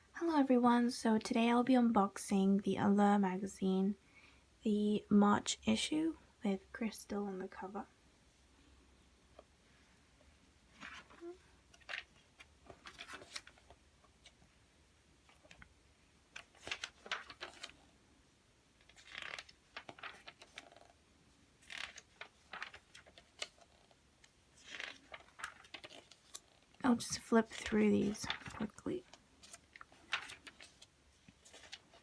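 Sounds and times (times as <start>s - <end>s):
paper rustling and crinkling: 10.7s - 14.4s, 16.3s - 17.9s, 18.8s - 21.0s, 21.6s - 32.0s.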